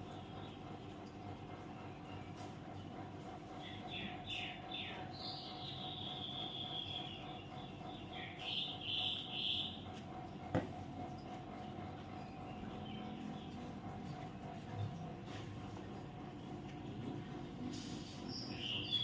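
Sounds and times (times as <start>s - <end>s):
bird calling: 3.6s - 9.8s.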